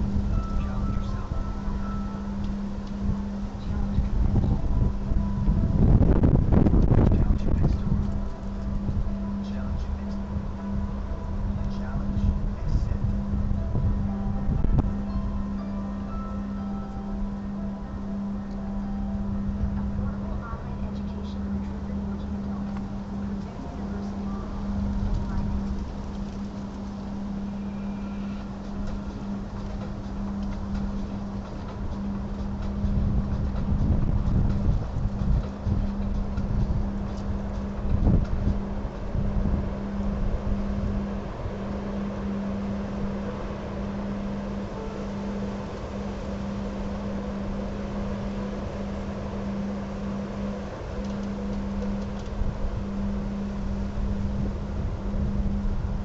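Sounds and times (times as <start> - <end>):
steady low hum: 0.0 - 56.0
wind buffeting microphone: 0.0 - 56.0.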